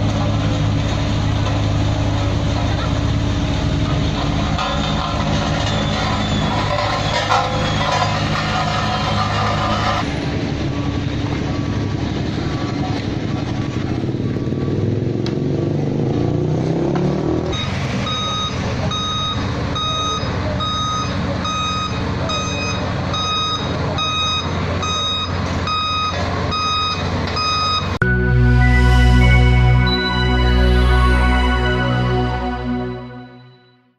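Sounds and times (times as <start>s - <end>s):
heavy vehicle engine running: 0.0s - 33.6s
reversing alarm beeping: 17.5s - 33.7s
music: 28.0s - 33.9s.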